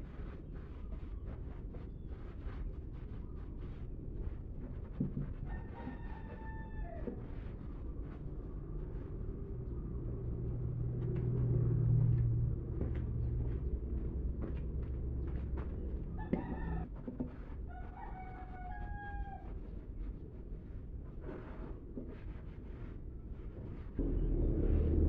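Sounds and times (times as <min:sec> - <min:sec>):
rooster crowing: 0:05.5 - 0:07.1, 0:16.2 - 0:16.9, 0:17.7 - 0:19.5
low steady hum: 0:22.4 - 0:25.0.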